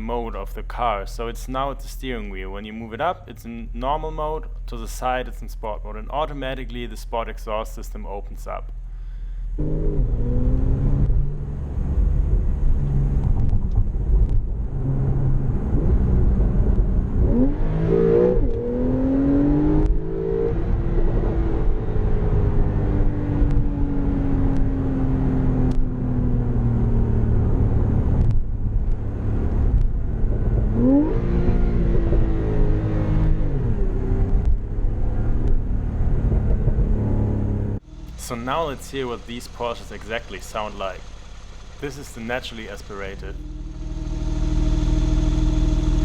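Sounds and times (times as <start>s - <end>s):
sports car engine revving: 9.6s - 46.0s.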